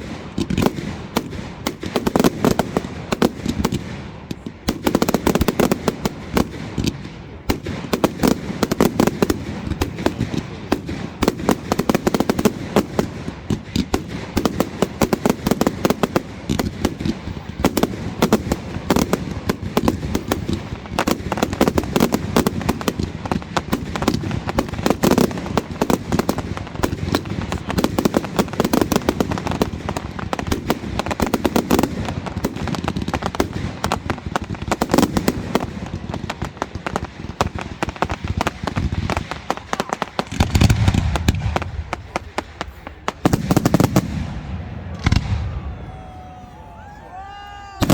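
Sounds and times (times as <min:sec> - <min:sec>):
deep firework booms: 0:00.0 - 0:45.8
fireworks bangs and crackling: 0:00.0 - 0:47.9.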